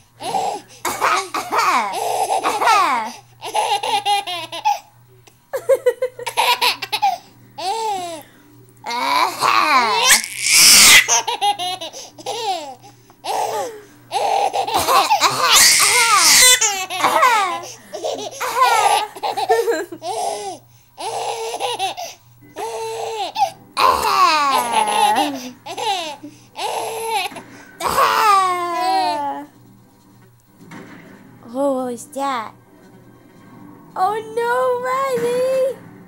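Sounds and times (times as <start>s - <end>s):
baby laughing: 0.2s - 4.9s, 5.6s - 8.2s, 8.9s - 29.5s.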